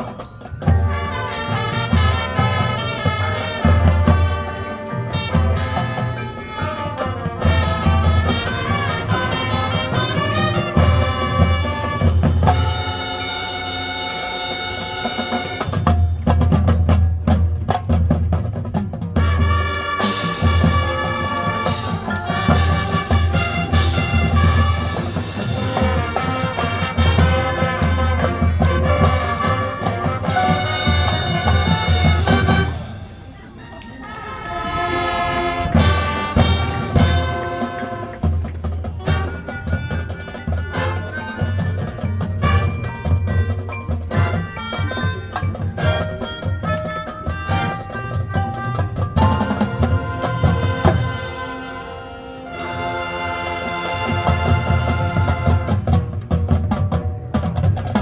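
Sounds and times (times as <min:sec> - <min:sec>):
marching band brass: 0:00.0 - 0:58.0
marching band drums: 0:00.0 - 0:58.0
full band hit with drums: 0:14.7 - 0:33.4, 0:34.8 - 0:39.9.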